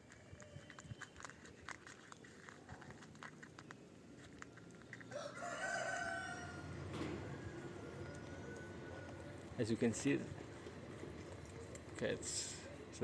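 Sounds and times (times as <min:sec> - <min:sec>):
cat crunching dry kibble: 0:00.0 - 0:05.5.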